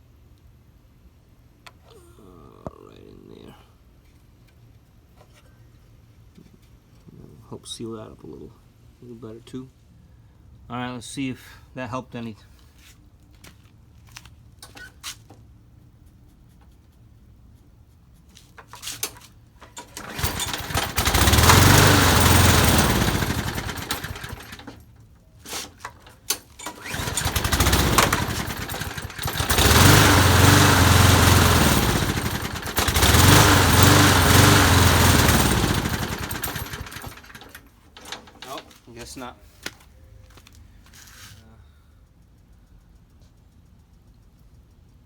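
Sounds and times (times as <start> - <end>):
lawn mower engine surging: 18.8 - 24.8, 25.5 - 38.8.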